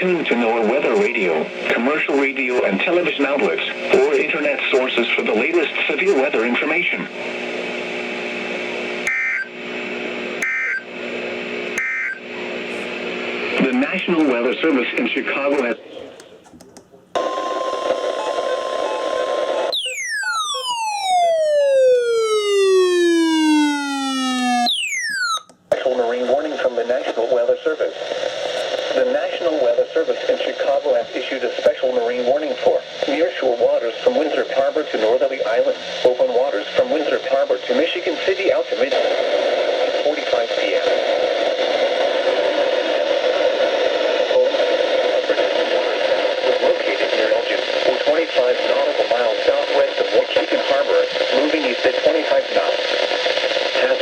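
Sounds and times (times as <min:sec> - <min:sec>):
siren-like falling tone: 0:19.7 - 0:25.5.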